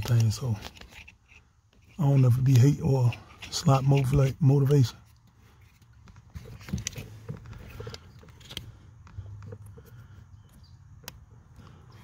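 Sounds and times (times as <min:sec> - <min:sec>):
tools and parts clicking: 0:00.0 - 0:04.3, 0:05.0 - 0:09.9.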